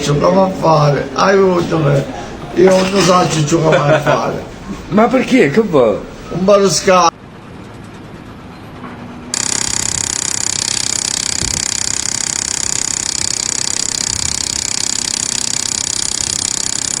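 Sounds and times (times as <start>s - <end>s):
power tool hammering and whining: 9.4s - 17.0s.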